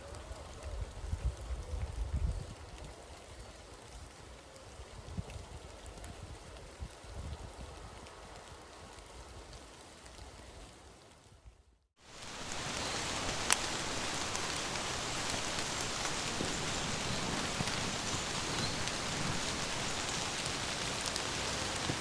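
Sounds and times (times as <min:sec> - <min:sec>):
heavy rain on a canvas tent: 0:12.0 - 0:22.0
rain drops ticking: 0:12.0 - 0:22.0.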